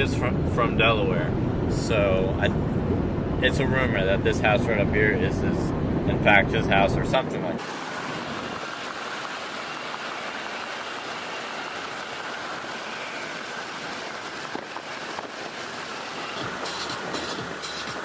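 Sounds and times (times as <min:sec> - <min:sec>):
water rushing along kayak: 0:07.6 - 0:18.0.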